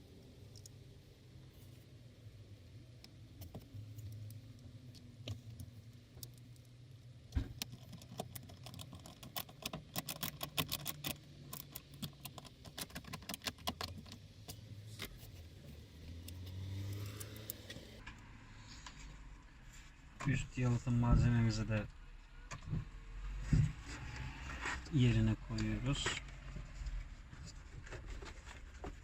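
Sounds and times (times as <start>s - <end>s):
low steady hum: 0.0s - 29.0s
clicks and rattles of plastic parts: 7.3s - 15.1s.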